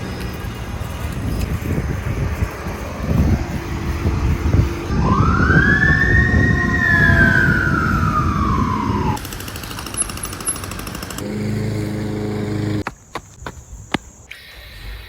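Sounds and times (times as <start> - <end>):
siren wailing: 4.9 - 9.2.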